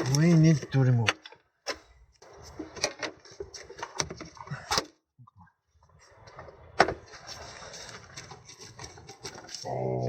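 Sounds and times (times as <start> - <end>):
rustling and scraping: 1.7 - 4.7, 5.8 - 10.0.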